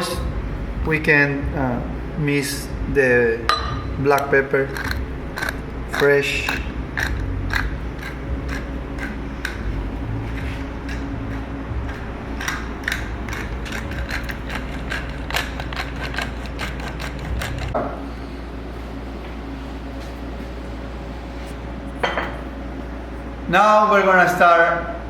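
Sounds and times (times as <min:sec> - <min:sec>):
steady low hum: 0:00.0 - 0:25.0
pepper mill ratcheting clicks: 0:10.9 - 0:17.8.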